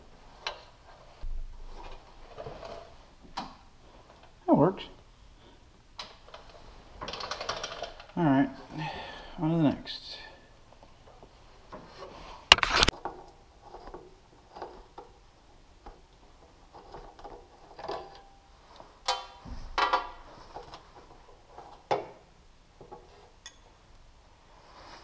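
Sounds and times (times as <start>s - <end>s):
hand tools clicking and knocking: 6.0s - 8.2s.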